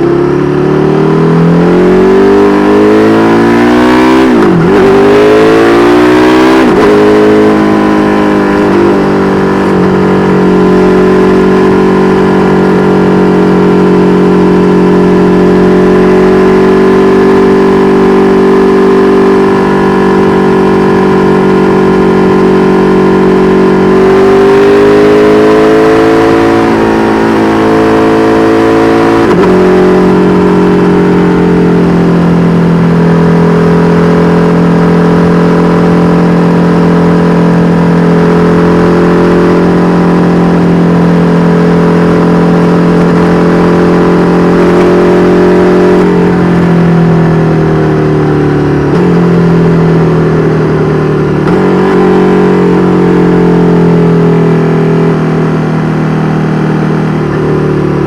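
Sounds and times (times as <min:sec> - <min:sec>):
motorcycle engine shifting gears: 0:00.0 - 0:58.0.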